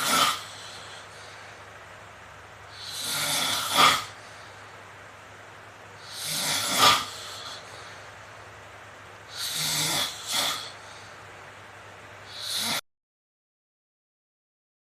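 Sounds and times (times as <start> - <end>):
man snoring loudly: 0.0 - 1.3, 2.7 - 4.4, 6.0 - 8.0, 9.3 - 11.1, 12.2 - 12.8.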